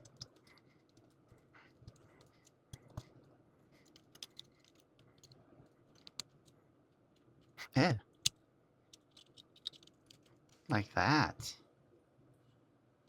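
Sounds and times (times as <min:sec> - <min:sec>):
plastic parts clicking and tapping: 0:01.8 - 0:03.2, 0:03.8 - 0:06.6, 0:08.1 - 0:10.3.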